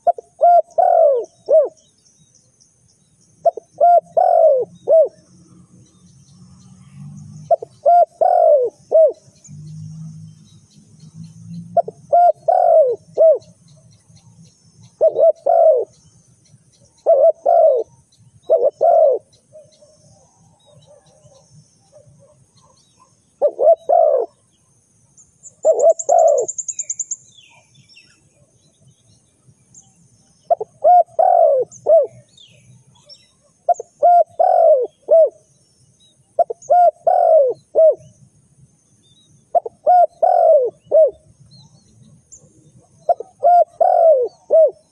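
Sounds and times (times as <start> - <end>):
dove cooing: 0.0 - 1.8, 3.4 - 5.3, 7.5 - 9.3, 11.8 - 13.5, 14.9 - 16.0, 17.0 - 20.0, 23.4 - 24.4, 25.6 - 26.6, 30.5 - 32.2, 33.7 - 35.4, 36.4 - 38.1, 39.5 - 41.2, 42.8 - 44.9.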